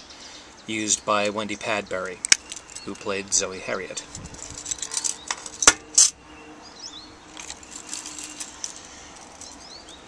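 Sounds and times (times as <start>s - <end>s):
metallic jingle: 4.1s - 6.2s, 7.4s - 9.7s.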